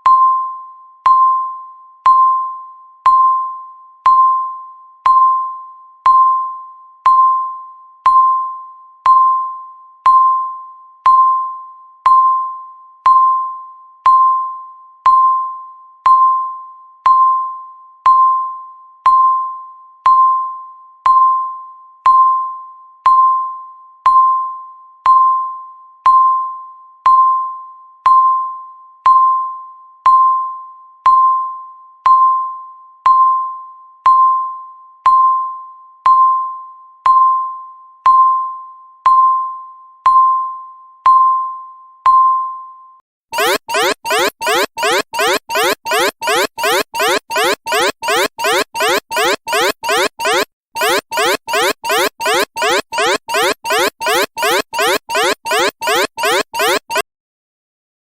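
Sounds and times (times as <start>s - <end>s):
timer electronic ding: 43.4s - 57.0s.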